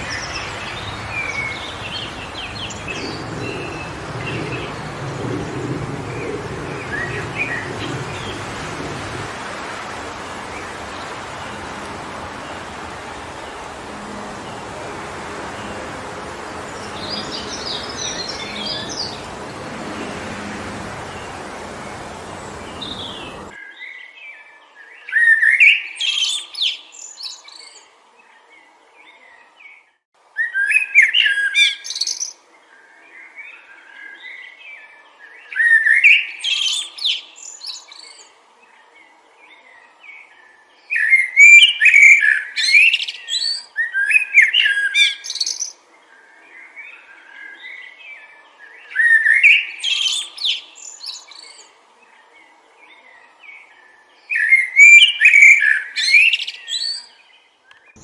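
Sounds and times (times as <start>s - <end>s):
wind noise: 0.0s - 23.6s
songbird singing: 0.0s - 29.8s, 30.4s - 58.0s.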